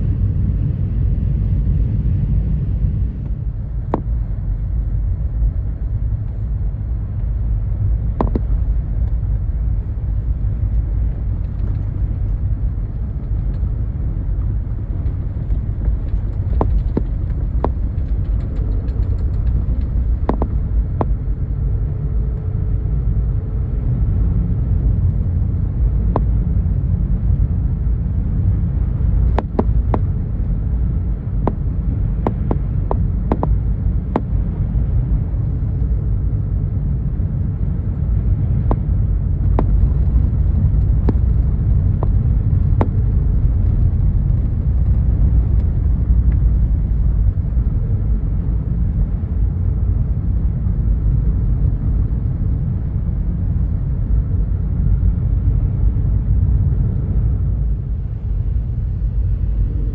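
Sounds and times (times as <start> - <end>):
steady low rumble: 0.0 - 59.9
faint clicks and ticks: 10.2 - 21.3.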